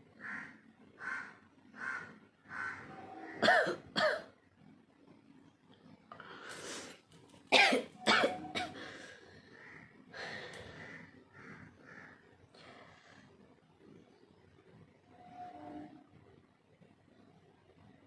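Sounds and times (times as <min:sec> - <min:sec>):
soft breathing: 0:06.1 - 0:07.0, 0:08.8 - 0:11.0
woman inhaling: 0:10.2 - 0:10.8.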